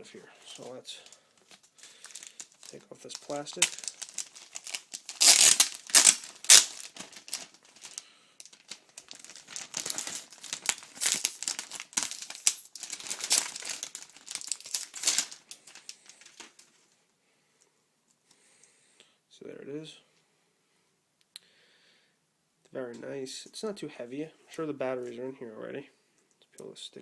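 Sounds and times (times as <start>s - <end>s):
plastic wrapping crinkling: 0.5s - 16.9s.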